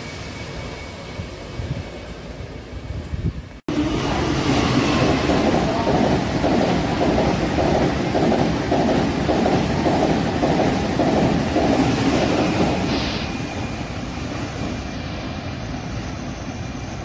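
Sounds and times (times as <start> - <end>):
train wheels clattering on rails: 4.4 - 13.8.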